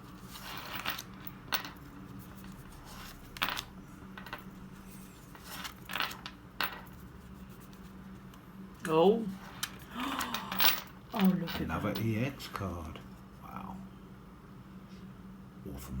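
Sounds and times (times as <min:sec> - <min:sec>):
low hum: 0:01.0 - 0:08.7.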